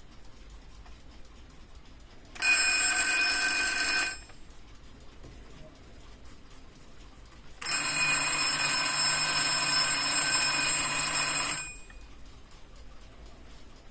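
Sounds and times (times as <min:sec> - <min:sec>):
clock ticking: 0:00.0 - 0:13.9
alarm clock bell ringing: 0:02.4 - 0:04.3, 0:07.6 - 0:12.0.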